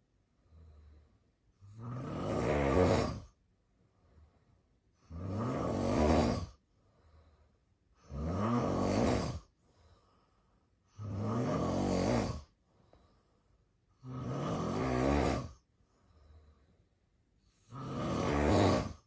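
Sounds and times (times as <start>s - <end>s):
faint breathing: 0.0s - 1.7s, 3.2s - 5.1s, 6.4s - 8.0s, 9.3s - 11.1s, 12.4s - 14.1s, 15.1s - 19.0s
man snoring: 1.6s - 3.4s, 5.0s - 6.6s, 8.0s - 9.6s, 10.9s - 12.6s, 14.0s - 15.6s, 17.4s - 19.0s.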